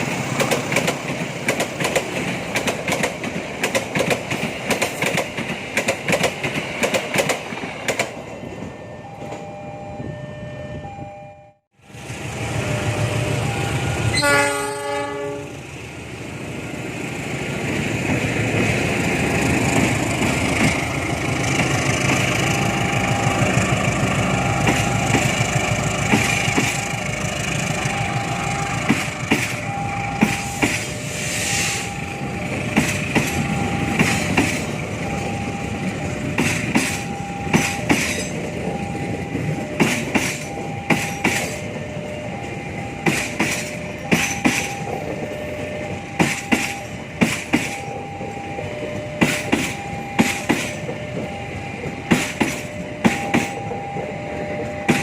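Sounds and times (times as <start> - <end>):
wheels clacking over rail joints: 0.0 - 9.4, 32.2 - 55.0
train cars rumbling: 0.0 - 11.0, 11.8 - 55.0
train horn blast: 14.1 - 15.6
on-off beeping tone: 24.2 - 36.2.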